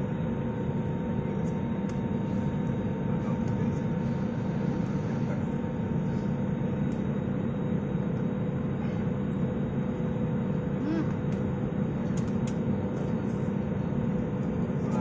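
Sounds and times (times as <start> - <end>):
aeroplane low drone: 0.0 - 15.0.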